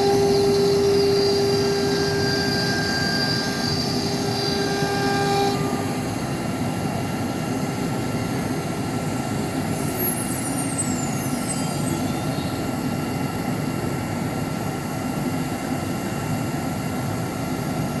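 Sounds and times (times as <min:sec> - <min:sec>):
steady tones: 0:00.0 - 0:06.8
high whine sliding down: 0:00.0 - 0:07.9
cnc router running: 0:00.0 - 0:18.0.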